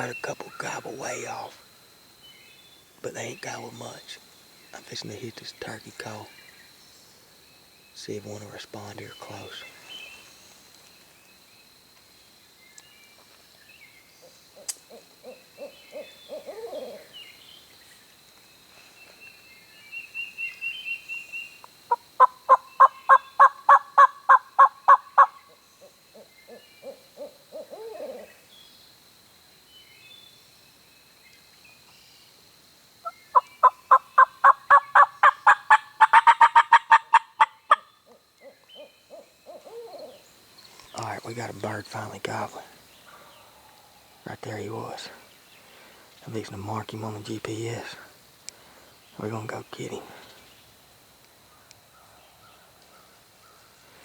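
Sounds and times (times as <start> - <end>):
turkey call yelps: 22.2 - 25.4, 33.4 - 37.9
low falling turkey calls: 33.0 - 40.2.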